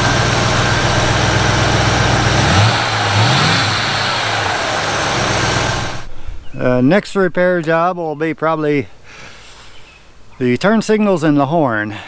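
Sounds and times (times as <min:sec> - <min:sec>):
car engine idling and revving: 0:00.0 - 0:06.1.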